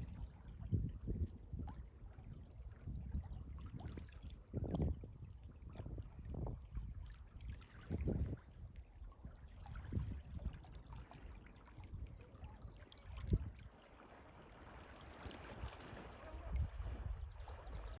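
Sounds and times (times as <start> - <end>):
wind buffeting microphone: 0.0 - 13.7, 15.2 - 18.0
seawater sloshing at shoreline: 9.4 - 18.0.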